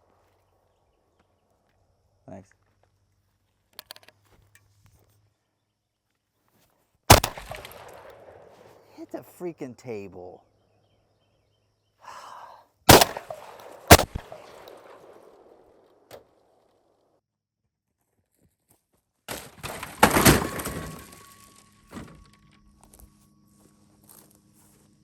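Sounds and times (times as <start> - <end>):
sharp ringing bangs: 7.1 - 8.9, 12.9 - 15.8
rough crash: 19.3 - 22.3.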